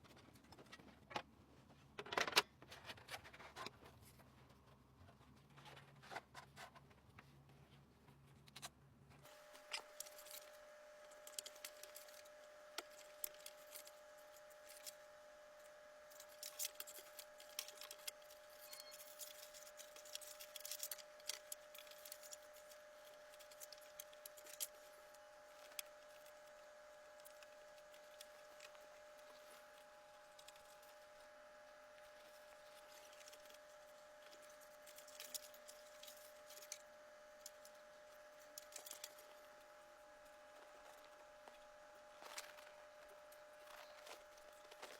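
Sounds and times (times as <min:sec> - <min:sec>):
faint steady hum: 0:00.0 - 0:44.9
small computer parts clinking: 0:16.0 - 0:24.9, 0:32.1 - 0:39.4.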